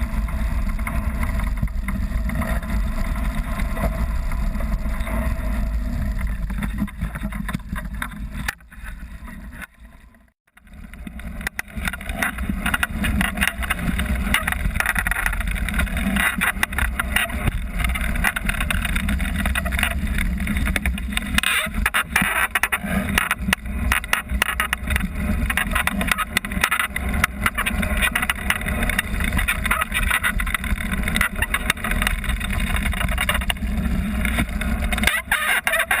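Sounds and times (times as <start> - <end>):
low rumble: 0.0 - 21.4
constant rattling: 0.0 - 36.0.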